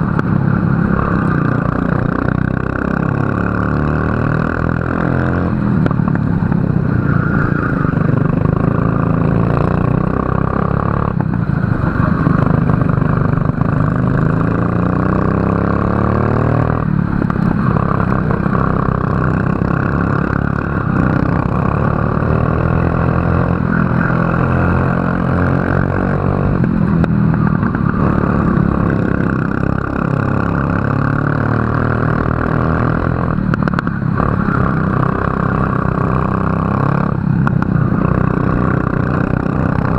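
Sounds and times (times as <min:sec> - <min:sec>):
kart engine racing: 0:00.0 - 0:39.9.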